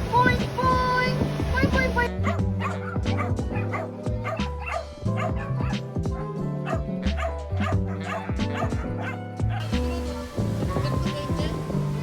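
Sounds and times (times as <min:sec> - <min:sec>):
background music with bass line: 0:00.0 - 0:12.0
dog barking: 0:02.1 - 0:05.9, 0:06.6 - 0:11.1.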